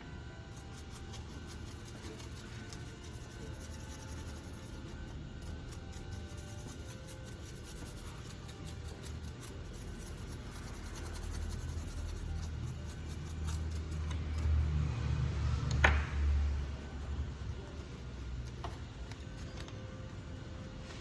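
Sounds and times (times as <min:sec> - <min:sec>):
tools scratching and clicking: 0:00.6 - 0:14.7.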